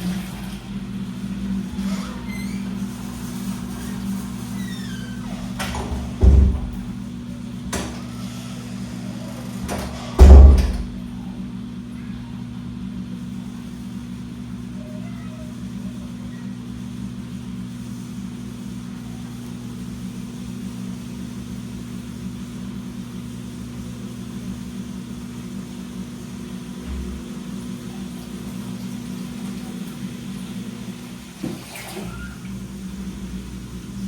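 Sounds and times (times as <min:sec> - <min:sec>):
washing machine running: 0:00.0 - 0:34.0
washing machine click: 0:01.7 - 0:11.2, 0:26.8 - 0:28.6.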